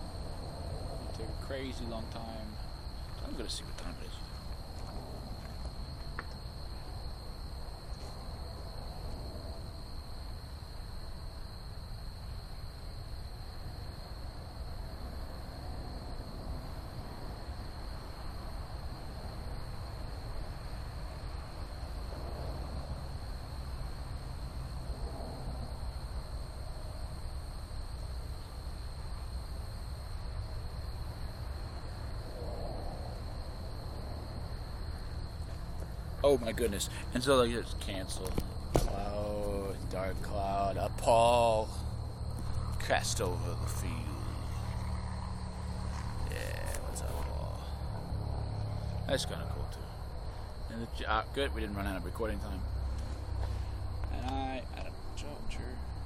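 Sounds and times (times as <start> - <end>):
high-pitched insect trill: 0.0 - 56.0.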